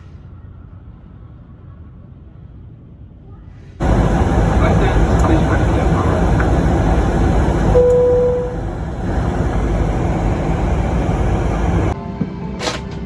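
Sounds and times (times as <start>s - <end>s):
vehicle rumbling: 3.8s - 12.0s.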